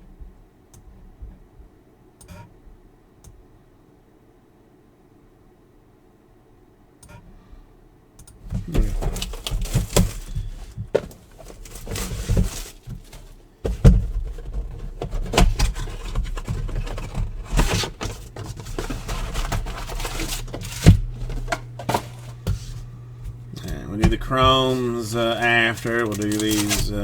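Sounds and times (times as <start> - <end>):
cards and cardboard handled: 8.5 - 27.0
plastic wrappers crinkling: 8.7 - 27.0.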